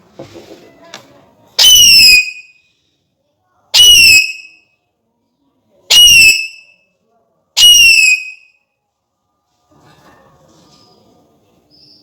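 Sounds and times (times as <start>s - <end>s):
parakeet whistling: 1.6s - 2.5s, 7.6s - 8.5s.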